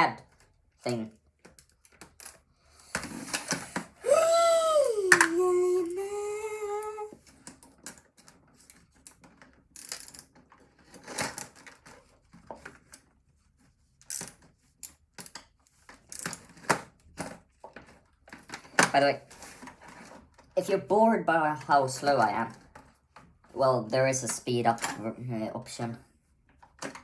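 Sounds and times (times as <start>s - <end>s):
person humming: 3.0s - 7.2s.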